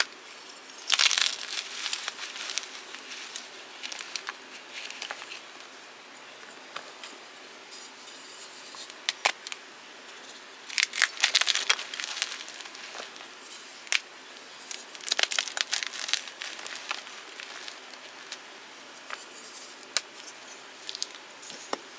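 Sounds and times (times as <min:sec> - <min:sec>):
chalk blocks crunching: 0:00.0 - 0:05.7, 0:10.7 - 0:14.0, 0:14.6 - 0:21.8.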